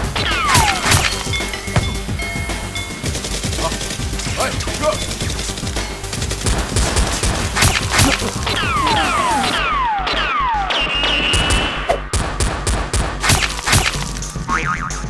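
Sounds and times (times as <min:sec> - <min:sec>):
gunshots: 0:00.5 - 0:08.4.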